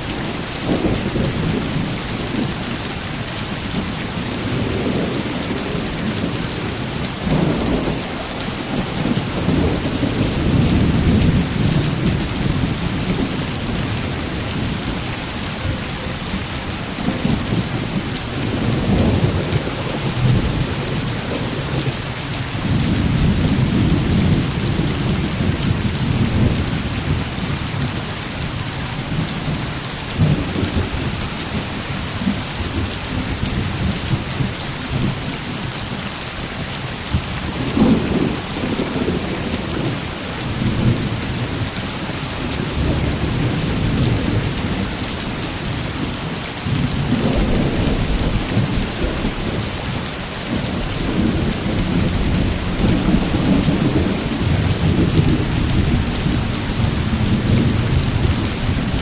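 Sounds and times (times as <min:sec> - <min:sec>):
heavy rain: 0:00.0 - 0:59.0
low rolls of thunder: 0:04.2 - 0:16.2, 0:37.1 - 0:41.6, 0:46.0 - 0:59.0.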